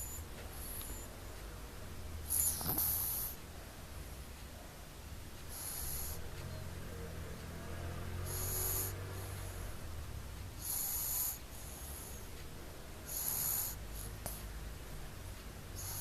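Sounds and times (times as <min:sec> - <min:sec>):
baby snoring through blocked nose: 0:02.3 - 0:03.4, 0:05.5 - 0:06.2, 0:07.9 - 0:09.7, 0:10.6 - 0:12.2, 0:13.1 - 0:14.5, 0:15.8 - 0:16.0.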